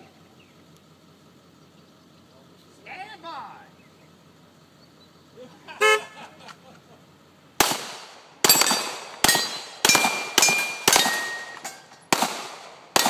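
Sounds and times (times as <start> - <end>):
pistol shots: 7.6 - 13.0
steel plate ringing: 8.5 - 12.0.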